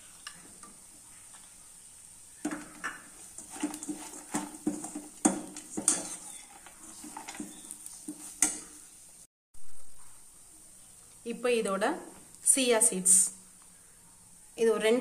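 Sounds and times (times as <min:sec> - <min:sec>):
spoon scraping a frying pan: 0:02.4 - 0:08.9.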